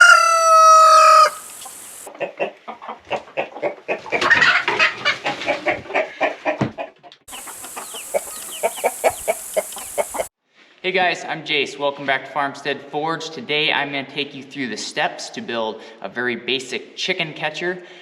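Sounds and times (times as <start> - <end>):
chickens clucking: 0.0 - 10.3.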